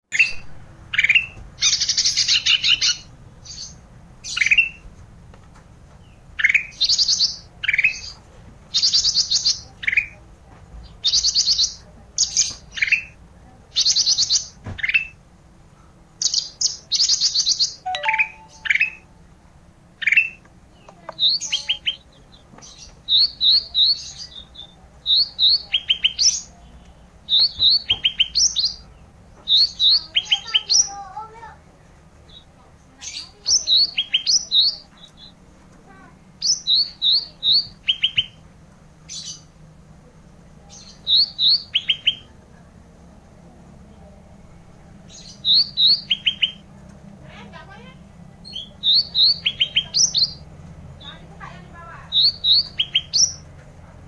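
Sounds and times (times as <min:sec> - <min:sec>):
songbird whistling and trilling: 0:00.1 - 0:04.8, 0:16.2 - 0:19.1, 0:40.8 - 0:42.3, 0:45.1 - 0:46.6, 0:48.4 - 0:50.4, 0:52.1 - 0:53.5
bird sharp chipping notes: 0:17.9 - 0:19.1.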